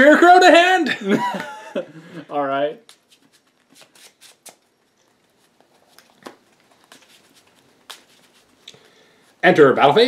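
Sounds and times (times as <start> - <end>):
cards clicking and scraping on table: 2.9 - 4.6, 5.5 - 8.5.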